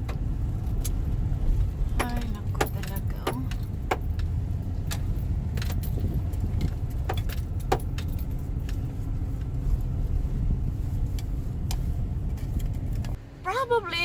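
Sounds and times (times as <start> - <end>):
road and engine rumble: 0.0 - 14.0
light rattling clicks: 2.0 - 8.8.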